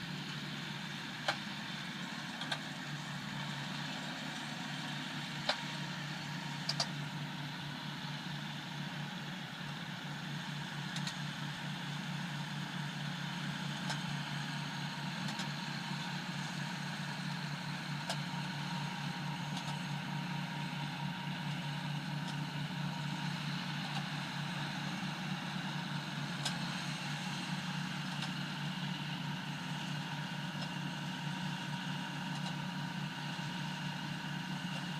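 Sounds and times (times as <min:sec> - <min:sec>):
tractor diesel engine running: 0:00.0 - 0:34.9.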